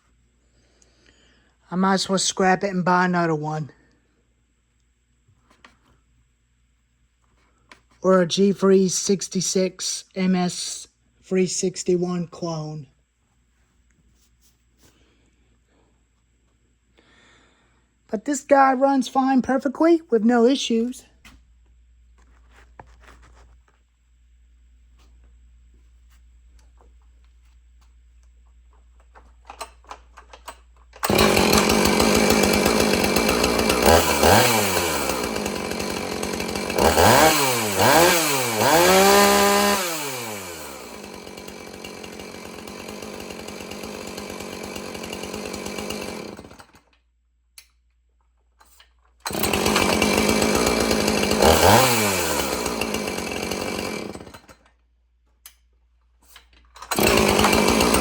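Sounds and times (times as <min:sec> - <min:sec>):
chainsaw starting and revving: 0:31.0 - 0:46.9, 0:49.2 - 0:54.7, 0:56.8 - 0:58.0.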